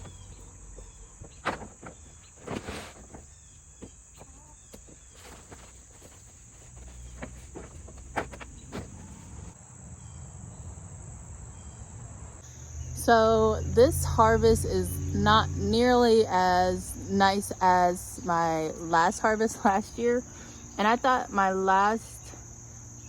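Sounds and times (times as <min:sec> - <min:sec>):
handling knocks and rustles: 0:00.0 - 0:09.6
insects trilling: 0:00.0 - 0:23.0.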